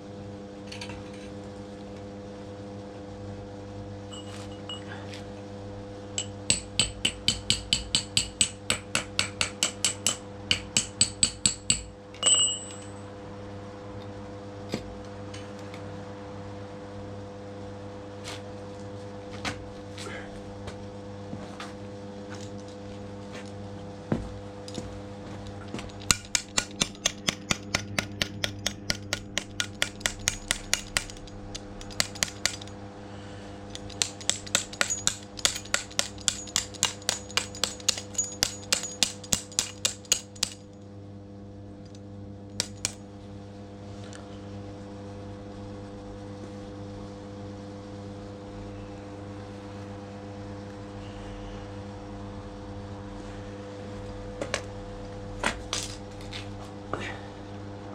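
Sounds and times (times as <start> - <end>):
steady hum: 0.0 - 57.9
quick sharp metallic taps: 25.9 - 32.7, 33.7 - 40.7.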